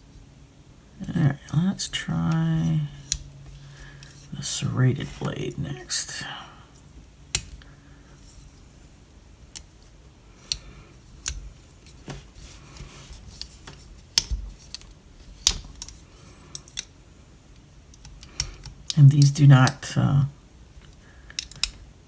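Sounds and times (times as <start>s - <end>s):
sharp clicks and snaps: 20.6s - 21.8s.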